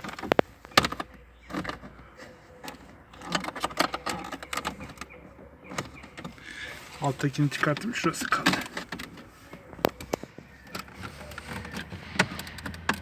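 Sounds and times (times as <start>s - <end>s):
plastic trim clicks and rattles: 2.6s - 6.5s, 7.3s - 13.0s.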